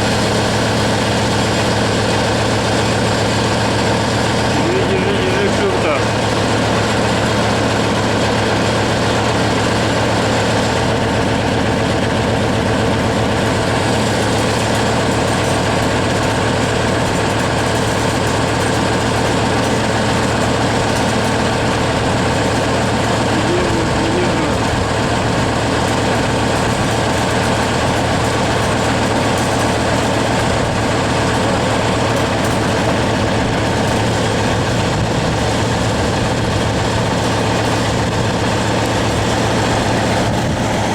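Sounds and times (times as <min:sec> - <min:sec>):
heavy engine idling: 0:00.0 - 0:40.9.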